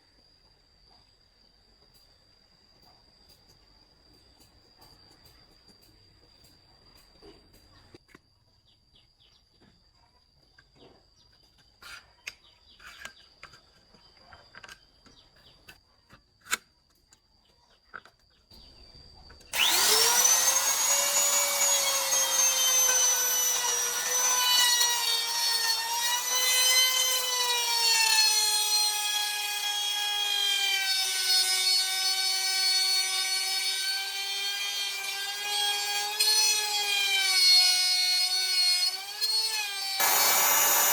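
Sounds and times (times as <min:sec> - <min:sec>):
circular saw cutting wood: 0:19.5 - 0:40.9.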